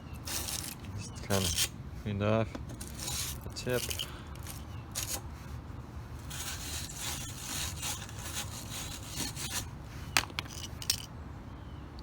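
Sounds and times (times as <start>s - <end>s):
reamer scraping metal pipe: 2.8s - 5.2s, 6.2s - 9.7s.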